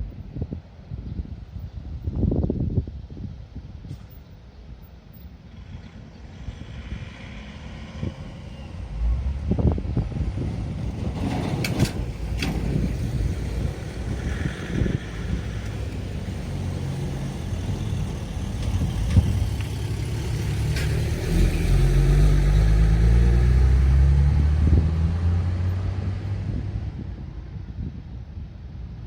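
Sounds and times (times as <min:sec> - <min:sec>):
vehicle engine accelerating: 0:05.5 - 0:28.0.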